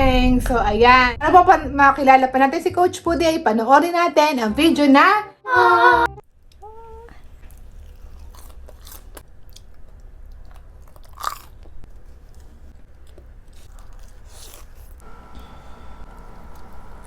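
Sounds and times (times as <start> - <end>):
chewing and crunching food: 6.5 - 15.0.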